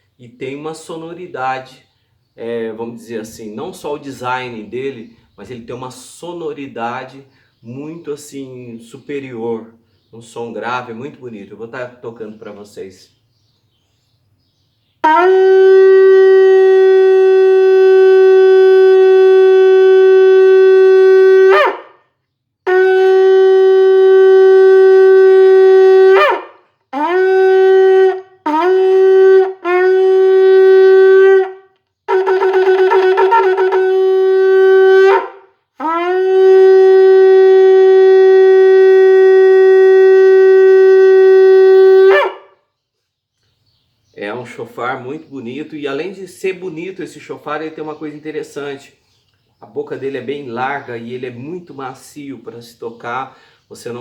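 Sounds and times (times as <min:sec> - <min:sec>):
shofar blasts: 0:15.0 - 0:22.0, 0:22.6 - 0:42.5.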